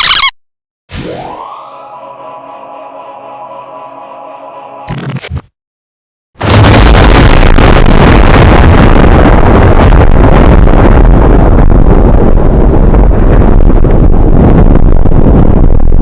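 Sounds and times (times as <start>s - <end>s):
distorted rushing rumble: 6.4s - 16.0s.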